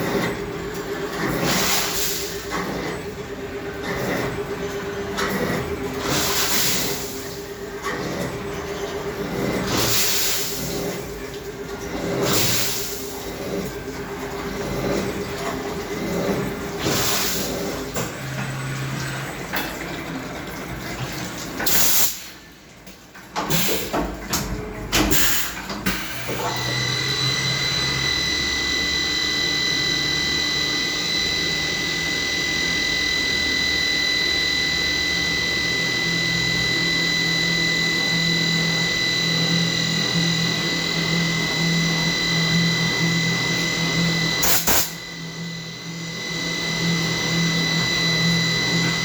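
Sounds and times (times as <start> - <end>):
spindle whine: 26.2 - 49.0.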